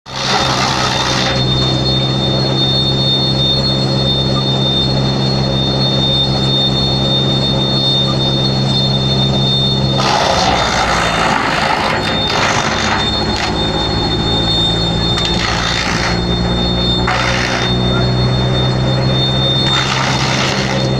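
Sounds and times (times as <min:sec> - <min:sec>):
wood chipper running: 0:00.0 - 0:20.9
wood being shredded: 0:00.1 - 0:01.4, 0:10.0 - 0:13.8, 0:14.9 - 0:17.9, 0:19.6 - 0:20.9.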